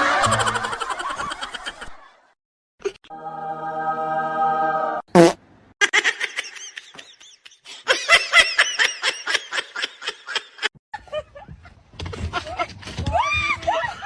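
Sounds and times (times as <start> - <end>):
high-pitched laughter: 0.0 - 2.1, 5.8 - 11.5.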